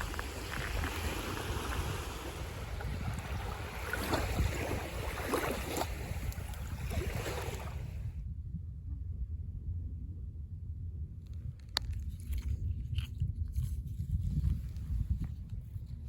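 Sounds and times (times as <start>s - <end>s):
sea waves washing: 0.0s - 8.0s
wind buffeting microphone: 0.0s - 16.0s.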